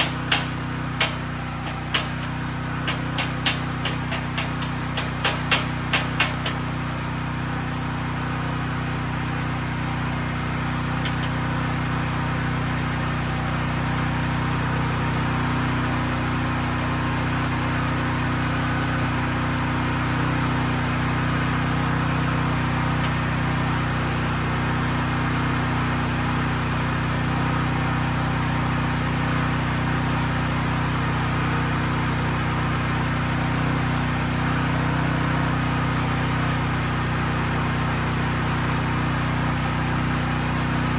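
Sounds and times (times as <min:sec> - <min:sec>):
low electrical hum: 0:00.0 - 0:06.6
plasma cutter hiss: 0:00.0 - 0:06.6.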